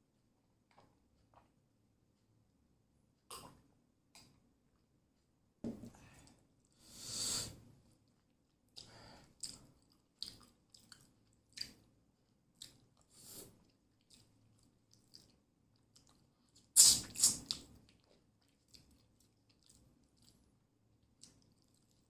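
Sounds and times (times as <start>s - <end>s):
person chewing food: 7.8s - 22.0s
loud sharp mouth sound: 16.8s - 17.6s.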